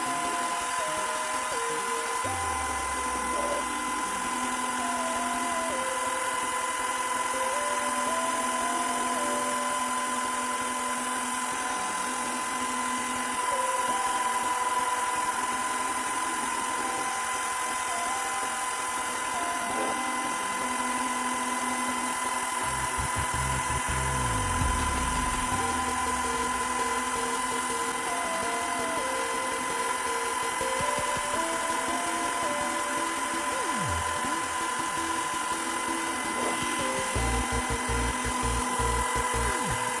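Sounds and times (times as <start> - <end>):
router spindle whine: 0.0 - 40.0
stepper motors humming: 0.0 - 40.0
low hum: 22.6 - 40.0.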